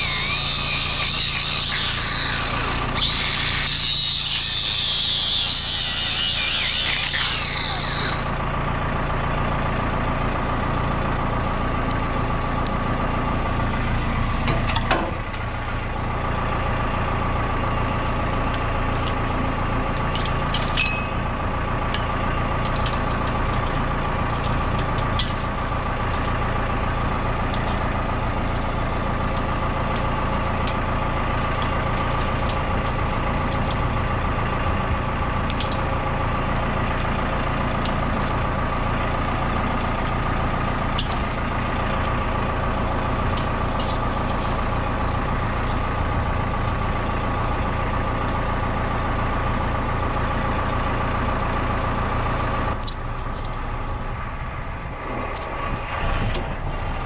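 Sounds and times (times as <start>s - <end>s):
constant whine: 0.0s - 57.0s
diesel engine running: 0.0s - 57.0s
sharp metal clanks and knocks: 14.4s - 15.2s, 19.9s - 21.3s, 21.9s - 26.4s.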